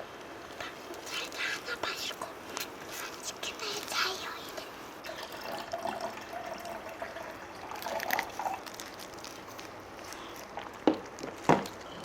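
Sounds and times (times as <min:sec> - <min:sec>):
liquid pouring into a cup: 0:05.0 - 0:09.5.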